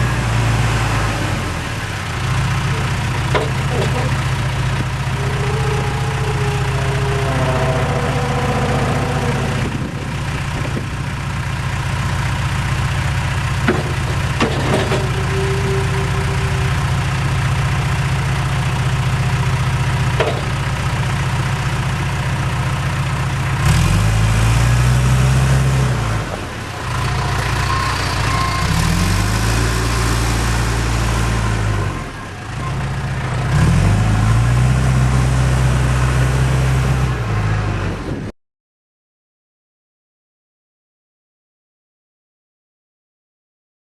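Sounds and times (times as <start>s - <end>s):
diesel engine idling: 0.0s - 34.6s.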